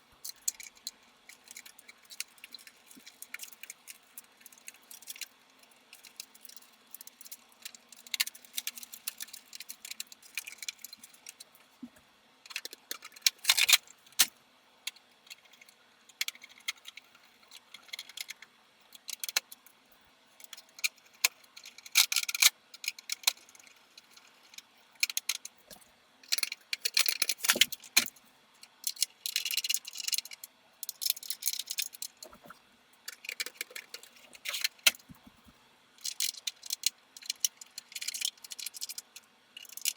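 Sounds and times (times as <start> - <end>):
small metal parts clinking: 0.2 - 11.4, 26.2 - 28.1, 28.8 - 32.3, 36.0 - 39.9.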